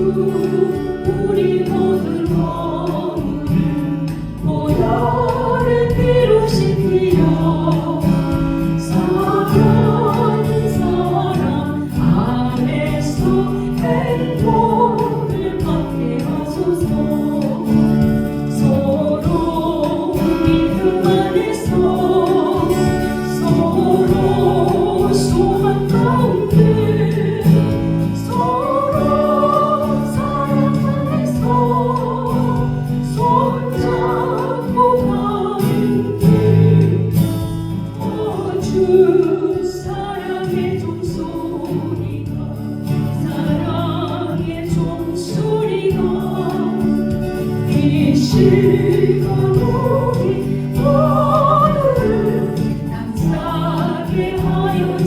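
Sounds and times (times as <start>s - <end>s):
musical backing: 0.0s - 55.0s
person singing gospel song: 0.0s - 55.0s.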